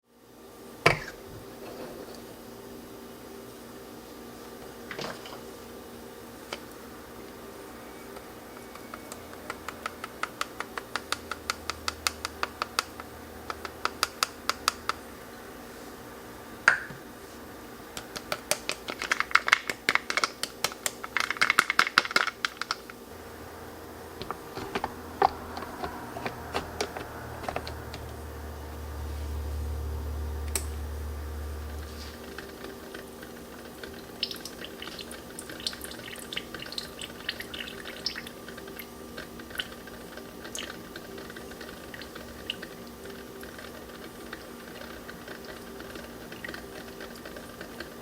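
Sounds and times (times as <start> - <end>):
low hum: 23.1 - 32.8.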